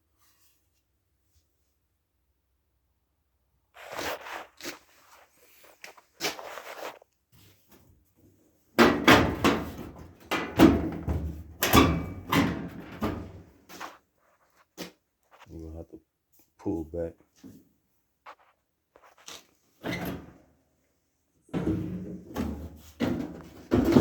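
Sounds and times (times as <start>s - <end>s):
sheet metal panels clunking and rattling: 8.8s - 13.5s, 21.5s - 24.0s.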